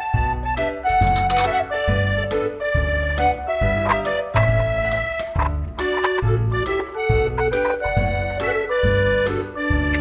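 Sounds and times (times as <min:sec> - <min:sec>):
accordion-like reed melody: 0:00.0 - 0:10.0
bouncy bass line: 0:02.0 - 0:10.0.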